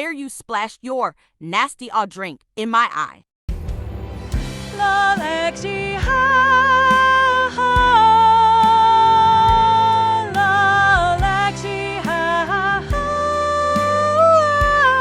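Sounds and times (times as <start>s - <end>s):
low drum hits: 3.5s - 8.1s
person singing with vibrato: 4.7s - 15.0s.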